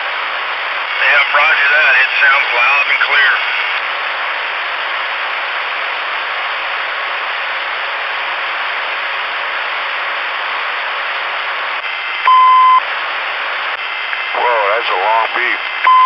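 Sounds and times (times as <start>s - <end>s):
radio static hiss: 0.0s - 16.0s
long radio beep: 1.0s - 3.8s, 12.2s - 12.9s, 14.4s - 16.0s.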